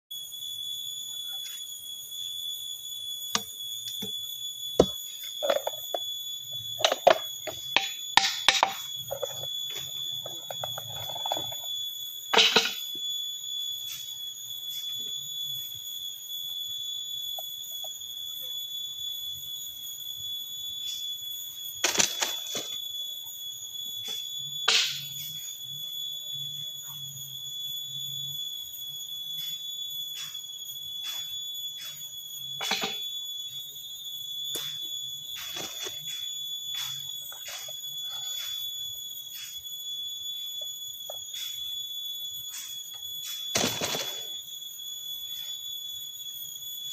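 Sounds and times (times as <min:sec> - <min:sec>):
steady high-pitched whine: 0:00.1 - 0:46.9
sharp knocks and clicks: 0:06.8 - 0:09.4.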